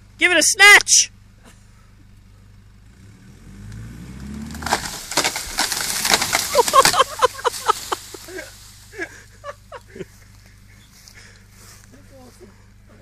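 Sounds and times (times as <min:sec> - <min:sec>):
engine revving: 0:02.5 - 0:09.4
wood cracking and splintering: 0:04.2 - 0:08.4.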